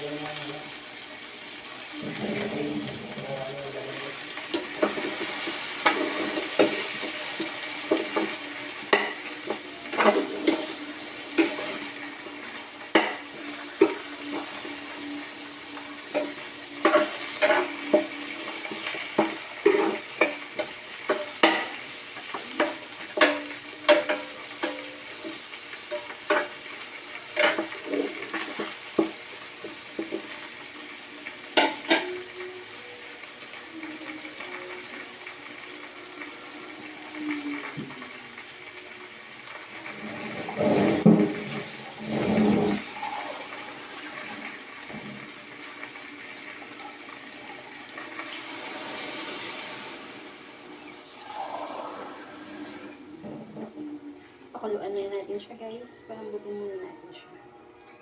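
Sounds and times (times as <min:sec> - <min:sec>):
food sizzling: 0:00.0 - 0:58.0
spatula scraping a pan: 0:16.1 - 0:29.2, 0:39.9 - 0:44.3.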